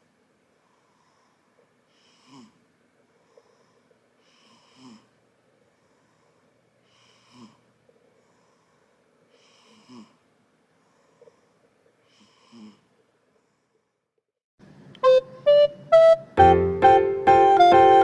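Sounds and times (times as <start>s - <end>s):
baby snoring: 2.0s - 2.6s, 4.3s - 5.1s, 7.0s - 7.6s, 9.4s - 10.2s, 12.2s - 12.9s.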